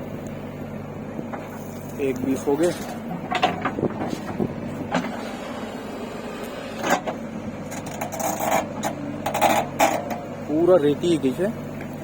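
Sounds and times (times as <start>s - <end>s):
heavy vehicle engine running: 0.0s - 12.0s
short knocks and clanks: 2.5s - 5.3s.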